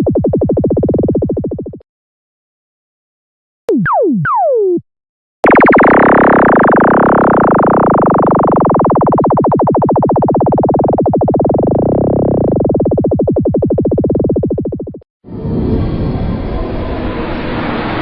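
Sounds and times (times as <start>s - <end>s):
falling laser zaps: 5.4s - 10.6s
pulsing electronic drone: 5.4s - 18.0s.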